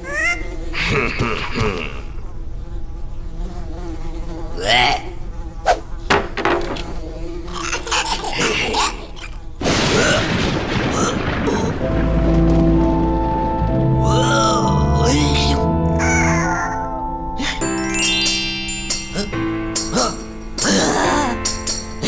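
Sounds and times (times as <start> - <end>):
insect-like buzzing: 0.0 - 9.6
music: 11.8 - 22.0.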